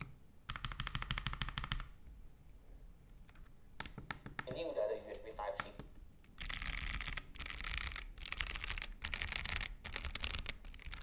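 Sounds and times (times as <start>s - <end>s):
mechanical keyboard clicky typing: 0.0s - 1.9s, 6.4s - 11.0s.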